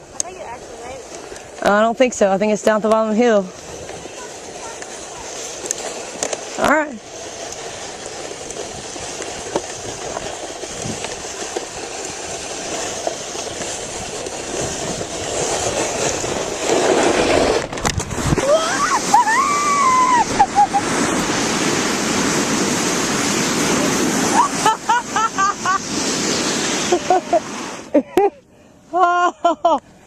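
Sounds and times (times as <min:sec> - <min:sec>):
sled runners scraping snow: 0:00.0 - 0:28.0
sled knocking on bumps: 0:00.2 - 0:27.2
wind on microphone: 0:06.8 - 0:27.9
person whooping: 0:18.4 - 0:20.9, 0:24.2 - 0:25.8.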